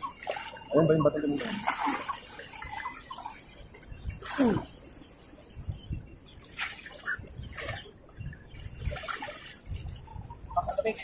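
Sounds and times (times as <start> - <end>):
short rustles or splashes: 0.0 - 3.4, 6.5 - 7.9, 8.7 - 10.0
insects trilling: 0.0 - 11.0.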